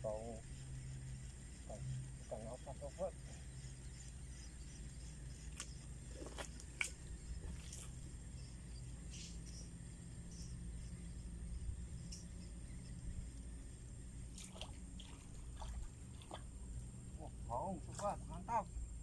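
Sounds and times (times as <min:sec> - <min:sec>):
low steady rumble: 0:00.0 - 0:19.0
small water splashes: 0:14.3 - 0:16.6.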